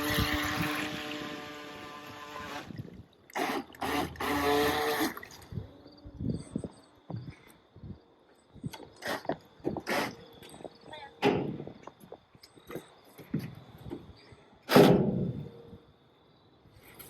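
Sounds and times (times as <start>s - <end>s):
boat motor whining: 0.0s - 5.3s
water sounds: 2.4s - 5.7s.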